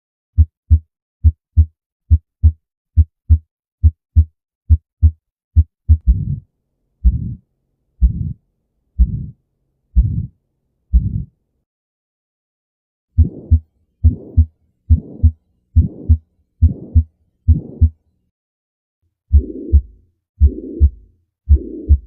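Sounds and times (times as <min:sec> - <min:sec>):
heartbeat lub-dub: 0:00.4 - 0:06.4, 0:07.0 - 0:07.4, 0:08.0 - 0:08.4, 0:09.0 - 0:09.4, 0:10.0 - 0:10.3, 0:10.9 - 0:11.3, 0:13.2 - 0:18.0, 0:19.3 - 0:22.0
whooshing heart murmur: 0:05.6 - 0:06.4, 0:07.0 - 0:07.4, 0:08.0 - 0:08.4, 0:10.0 - 0:10.3, 0:13.2 - 0:17.9, 0:19.3 - 0:22.0.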